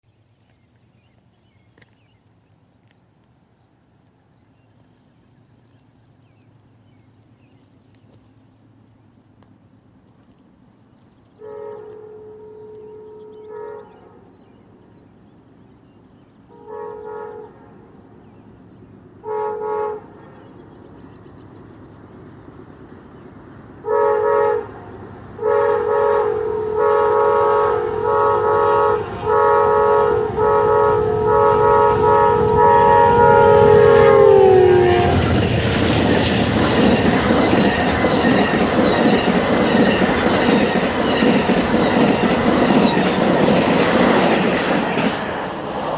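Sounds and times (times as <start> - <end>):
locomotive air horn blasts: 11.4 - 14.2, 16.5 - 17.8, 19.2 - 20.3, 23.8 - 24.8, 25.4 - 35.4
passenger train rushing by: 11.4 - 45.9.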